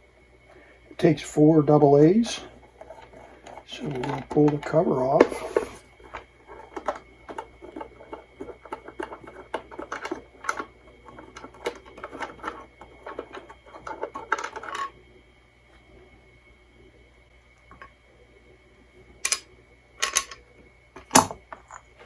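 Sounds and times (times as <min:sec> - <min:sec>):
plastic cover clicking and scraping: 0:02.7 - 0:14.9.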